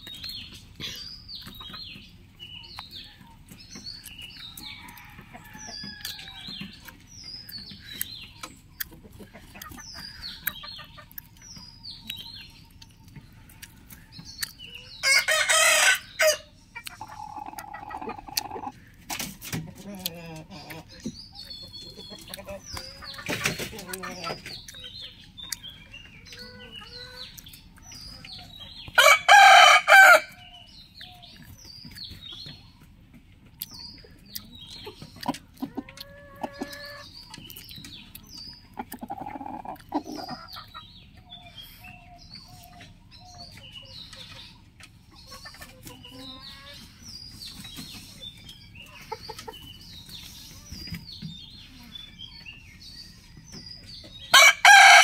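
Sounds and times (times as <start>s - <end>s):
chickens clucking: 0.0s - 55.0s
roosters crowing: 4.4s - 6.8s, 14.9s - 18.8s, 28.7s - 31.4s, 54.3s - 55.0s.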